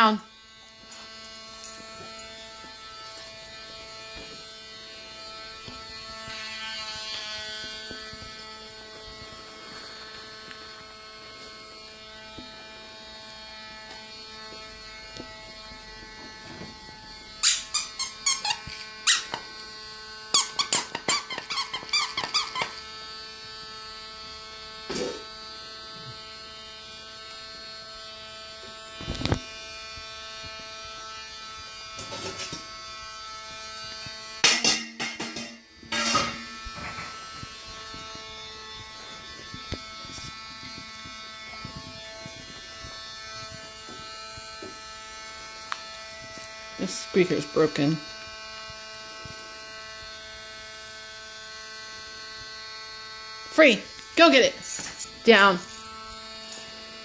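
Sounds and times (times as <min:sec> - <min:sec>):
squeaky dog toy squeaking: 0:17.4 - 0:19.4, 0:20.3 - 0:22.8.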